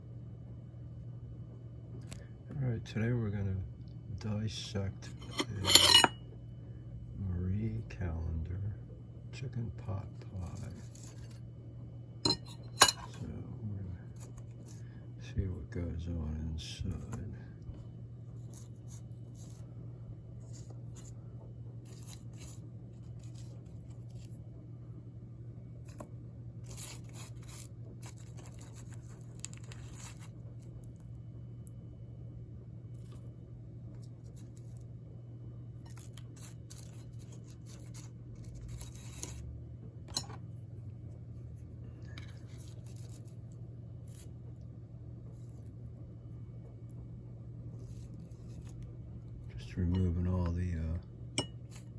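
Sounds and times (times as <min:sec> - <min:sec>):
steady low hum: 0:00.0 - 0:51.9
knife scraping pie crust: 0:05.0 - 0:06.2, 0:10.3 - 0:11.4, 0:12.3 - 0:13.2, 0:18.4 - 0:19.7, 0:20.4 - 0:21.2, 0:21.8 - 0:24.3, 0:26.6 - 0:30.9, 0:35.9 - 0:39.4, 0:41.4 - 0:44.4, 0:47.7 - 0:48.8, 0:51.4 - 0:51.9.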